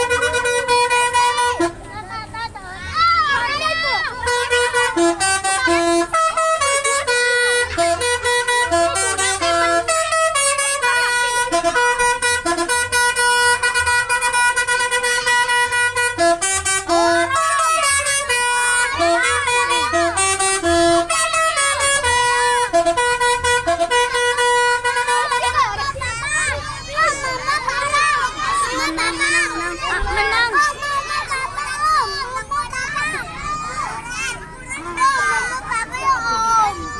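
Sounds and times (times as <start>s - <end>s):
multi-tone bus horn melody: 0.0s - 36.9s.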